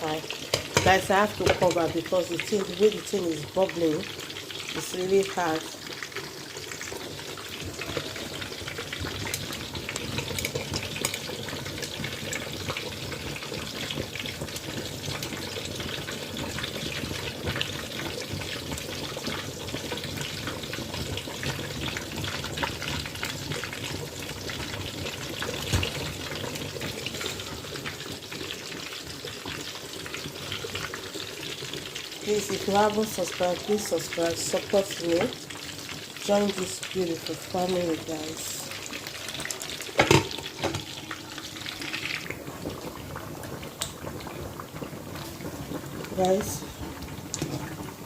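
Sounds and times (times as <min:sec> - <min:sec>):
food sizzling in hot oil: 0:00.0 - 0:48.0
oil crackling: 0:00.2 - 0:48.0.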